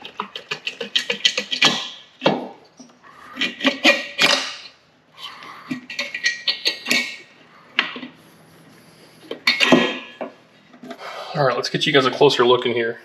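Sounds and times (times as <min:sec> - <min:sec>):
metal parts clinking and knocking: 0:05.7 - 0:07.2.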